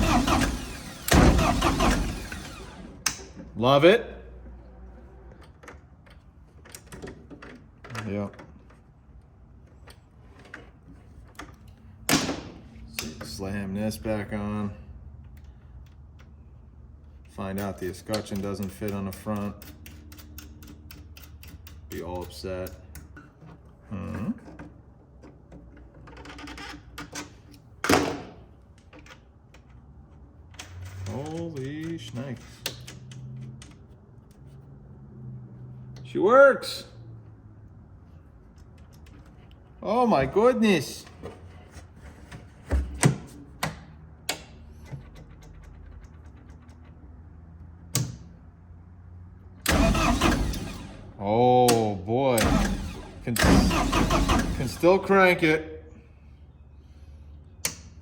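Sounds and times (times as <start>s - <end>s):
diesel generator engine running: 0.0s - 3.6s, 49.6s - 51.2s, 51.8s - 55.3s
metal parts clicking and tapping: 17.2s - 23.3s.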